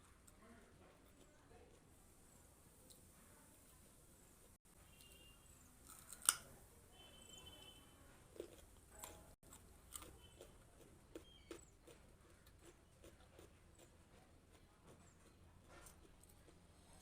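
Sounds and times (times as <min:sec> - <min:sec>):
crunching raw carrot: 0:05.8 - 0:06.6, 0:08.3 - 0:17.0.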